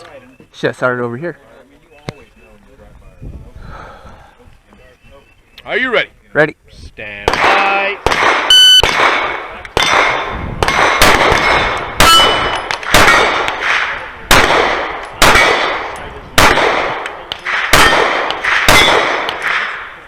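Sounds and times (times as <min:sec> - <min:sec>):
pistol shots: 0:07.2 - 0:20.0.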